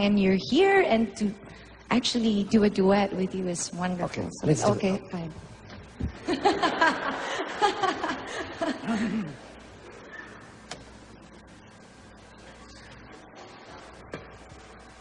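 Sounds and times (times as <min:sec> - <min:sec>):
people laughing: 0:06.1 - 0:10.0.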